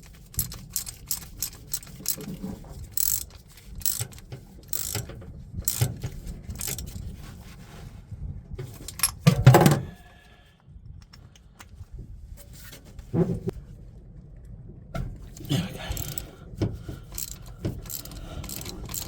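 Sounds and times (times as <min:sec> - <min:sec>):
metal clinks: 0:03.0 - 0:05.1, 0:05.7 - 0:06.0, 0:06.6 - 0:07.0, 0:15.4 - 0:16.3, 0:17.0 - 0:19.0.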